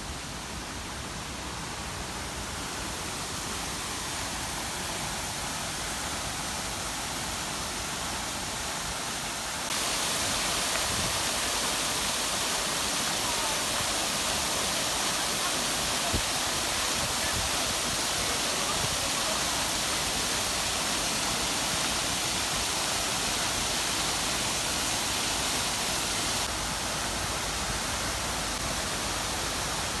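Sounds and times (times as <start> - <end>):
waterfall pouring into pond: 9.7 - 30.0.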